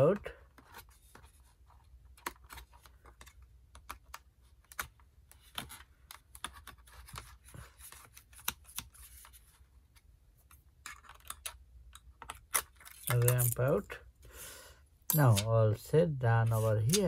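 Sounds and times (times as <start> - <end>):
plastic parts clicking and tapping: 10.4 - 13.5.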